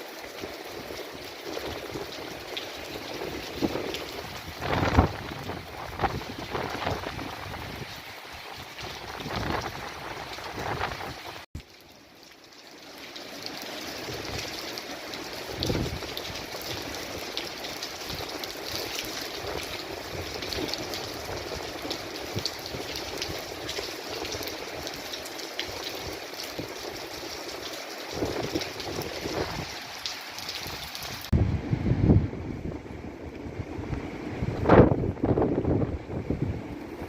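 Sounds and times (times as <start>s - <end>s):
pattering raindrops: 0.0s - 31.4s
rain hissing: 0.0s - 37.0s
wind gusting on microphone: 0.4s - 11.5s, 15.4s - 25.0s, 28.0s - 37.0s.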